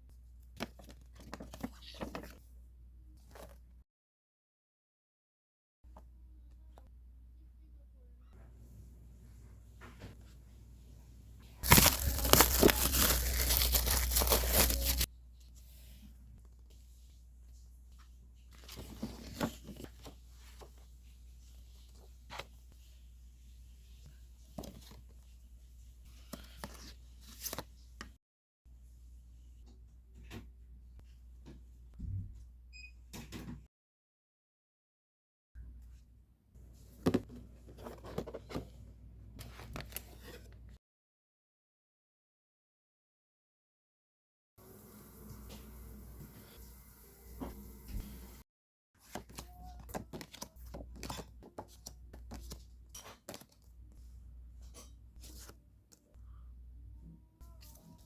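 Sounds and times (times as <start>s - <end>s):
packaging crinkling and tearing: 11.6s - 15.1s.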